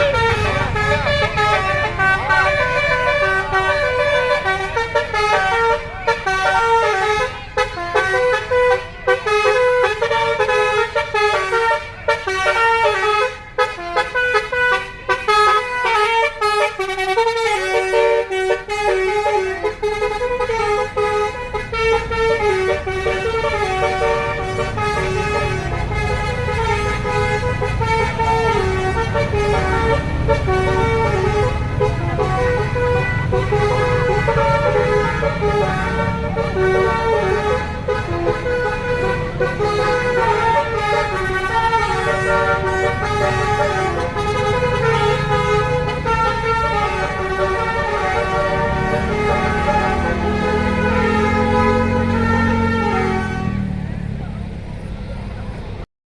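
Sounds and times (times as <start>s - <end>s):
musical air horns playing a tune: 0.0s - 54.2s.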